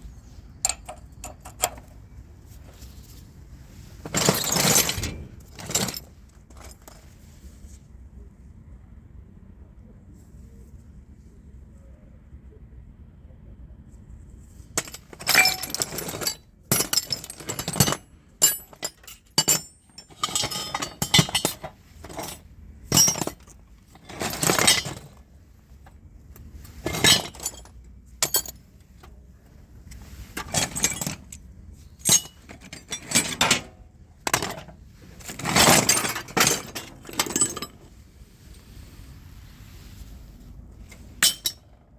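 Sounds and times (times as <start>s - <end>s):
metal scrap and tools clanking: 0.6s - 1.9s, 3.8s - 7.1s, 14.8s - 28.6s, 29.9s - 38.6s, 40.2s - 41.7s.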